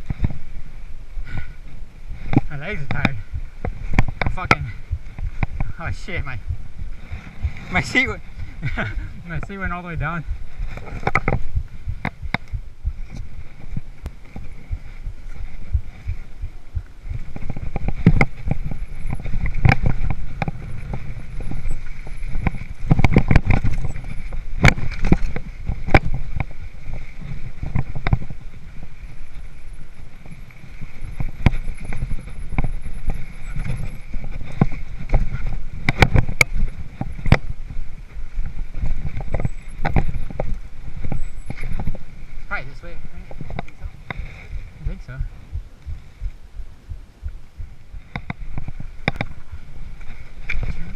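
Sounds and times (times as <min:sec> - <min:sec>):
low tyre rumble: 0:00.0 - 0:50.9
bike chain and frame clattering: 0:17.2 - 0:37.7.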